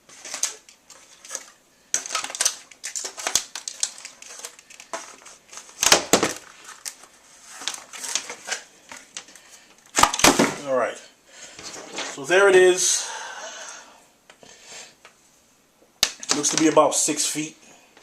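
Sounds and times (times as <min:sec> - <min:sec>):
plastic packaging crinkling: 0:00.1 - 0:10.4.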